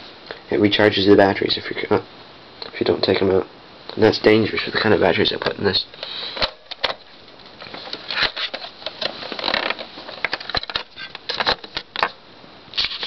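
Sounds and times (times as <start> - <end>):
batteries rattling: 7.6 - 12.1.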